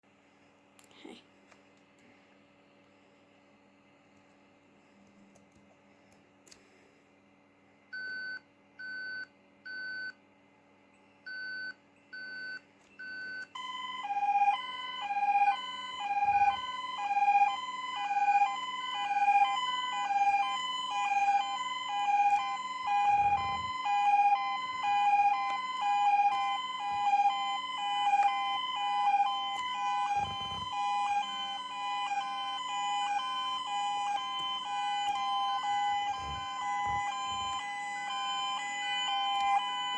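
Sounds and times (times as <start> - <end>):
steady low hum: 0.1 - 39.9
two-tone alarm sounder: 11.3 - 39.9.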